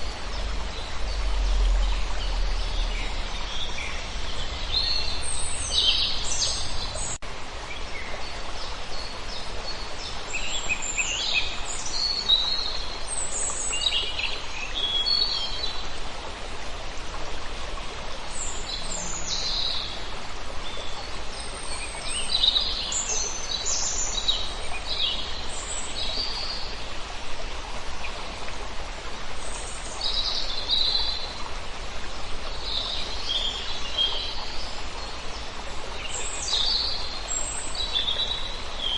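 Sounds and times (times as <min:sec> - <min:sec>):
songbirds singing and chirping: 0:00.0 - 0:15.9
flowing water rushing: 0:00.0 - 0:38.9.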